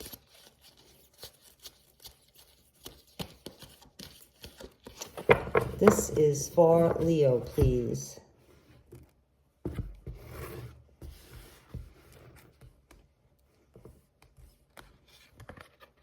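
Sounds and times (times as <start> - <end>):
cards being shuffled: 0.0 - 6.4.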